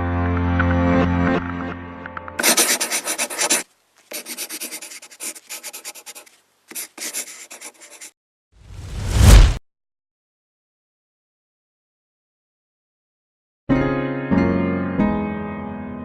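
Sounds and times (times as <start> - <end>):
scratchy rubbing strokes: 2.4 - 8.2
rising whoosh: 8.7 - 9.6.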